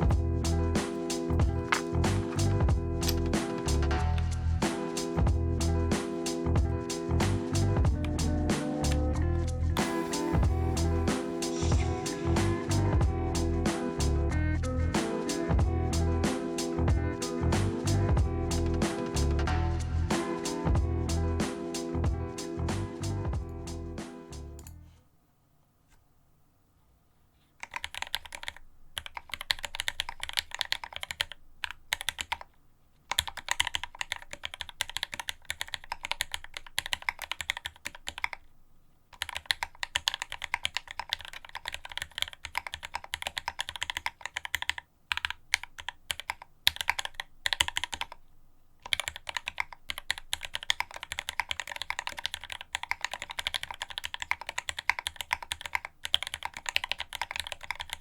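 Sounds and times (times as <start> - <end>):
mechanical keyboard typing: 0.8 - 4.0, 27.6 - 32.5, 33.1 - 38.5, 39.1 - 48.2, 48.8 - 58.0.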